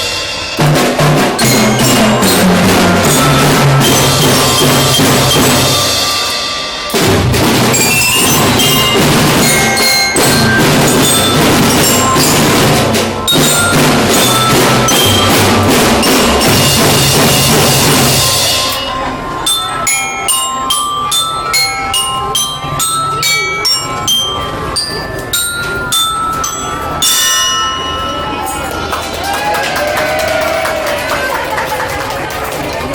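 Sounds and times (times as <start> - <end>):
marching drums: 0.0 - 18.9
marching glockenspiel notes: 0.0 - 30.7.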